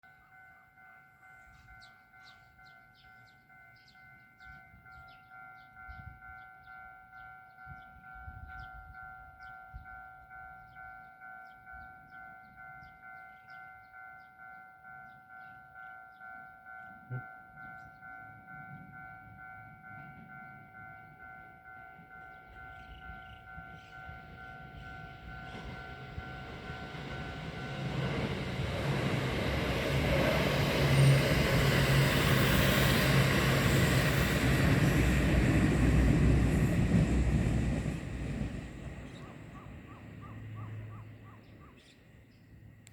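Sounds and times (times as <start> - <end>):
level crossing warning bell: 0.0 - 41.0
train wheels rumbling on rails: 22.4 - 40.8.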